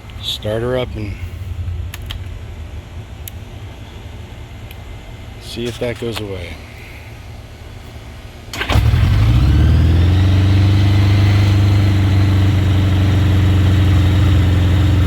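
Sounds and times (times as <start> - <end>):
motorcycle engine starting and idling: 8.5 - 15.0.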